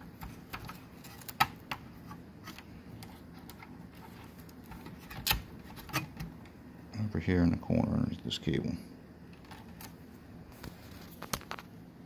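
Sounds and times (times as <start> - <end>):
faint background noise: 0.0 - 12.0.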